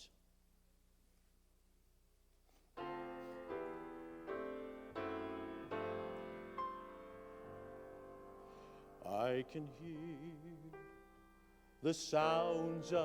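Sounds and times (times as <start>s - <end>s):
slow piano chords: 2.8s - 13.0s.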